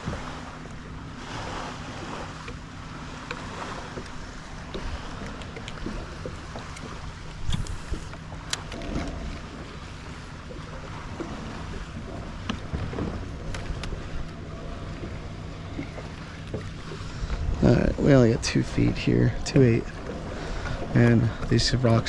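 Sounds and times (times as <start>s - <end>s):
water sloshing against kayak hull: 0.0s - 22.0s
paddle knocking against hull: 2.0s - 22.0s
wind on microphone: 6.8s - 9.8s, 16.8s - 22.0s.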